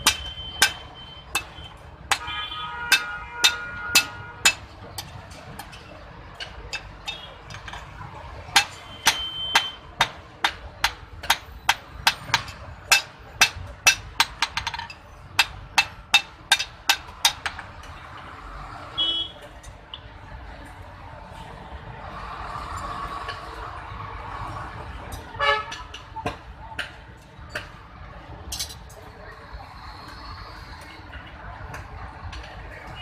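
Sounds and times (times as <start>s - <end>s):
hammer striking iron on anvil: 0.0s - 2.3s, 2.9s - 5.8s, 8.5s - 17.7s.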